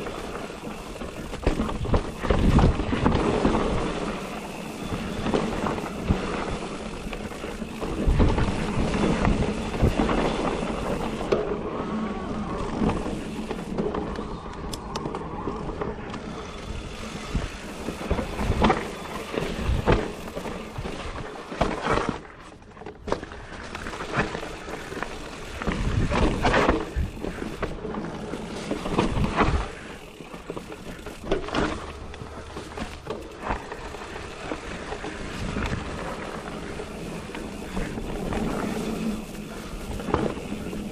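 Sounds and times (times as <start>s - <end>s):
bike knocking and rattling: 0.0s - 40.9s
tyres rolling on dirt trail: 0.0s - 40.9s
wind rushing over microphone: 1.6s - 4.2s.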